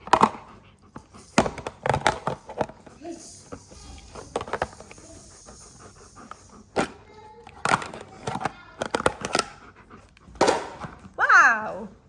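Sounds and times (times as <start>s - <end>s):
knocks and clatters on hard floor: 0.0s - 3.0s, 3.7s - 5.1s, 7.6s - 9.5s, 10.2s - 11.2s.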